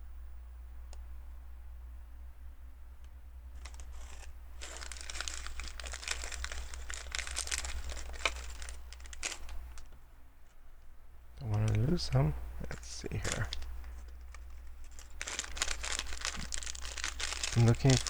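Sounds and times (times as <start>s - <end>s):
plastic bag crinkling: 3.6s - 10.0s, 12.7s - 18.0s
small plastic pieces clicking: 14.3s - 18.0s.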